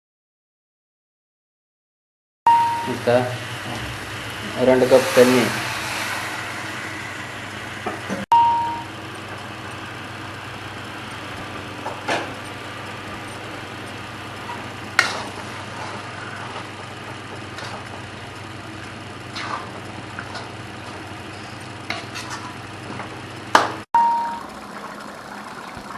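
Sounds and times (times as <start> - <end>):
ding: 8.3 - 8.9, 24.0 - 24.4.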